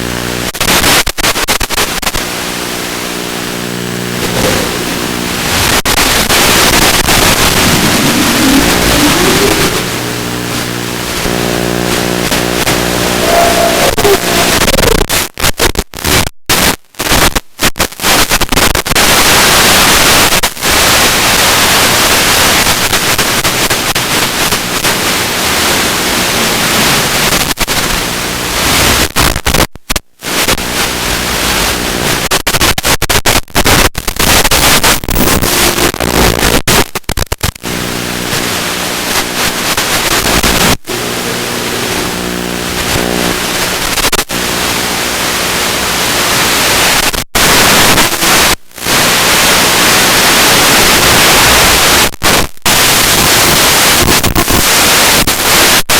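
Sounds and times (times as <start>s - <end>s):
loud steady hiss: 0.0s - 15.1s
drone motors buzzing: 4.1s - 5.8s, 6.7s - 15.0s.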